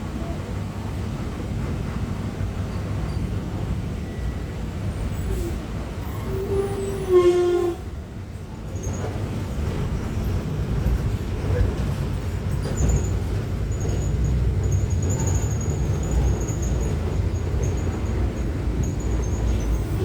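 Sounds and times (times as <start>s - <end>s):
diesel bus engine rumbling: 8.1s - 20.0s.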